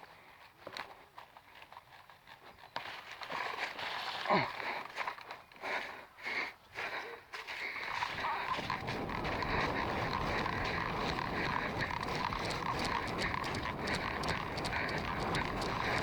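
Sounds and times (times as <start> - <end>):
gear rustling: 8.0 - 16.0.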